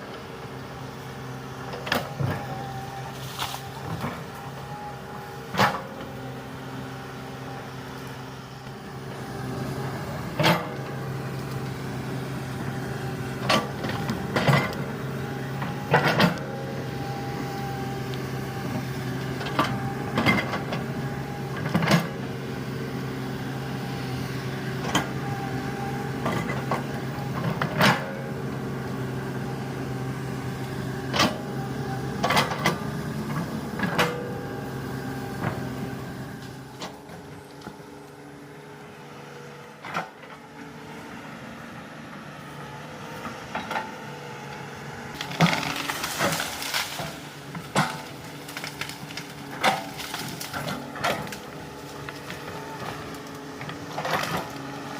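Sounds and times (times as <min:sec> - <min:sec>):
excavator engine running: 0:00.0 - 0:54.9
excavator knocks and clunks: 0:01.5 - 0:06.2, 0:09.2 - 0:11.7, 0:12.3 - 0:17.9, 0:18.6 - 0:22.2, 0:24.8 - 0:29.0, 0:30.8 - 0:35.8, 0:45.2 - 0:54.8.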